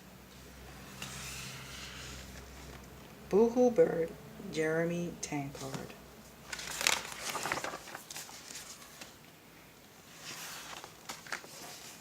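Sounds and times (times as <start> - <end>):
book pages rustling: 0.8 - 2.9, 5.5 - 9.2, 10.0 - 12.0.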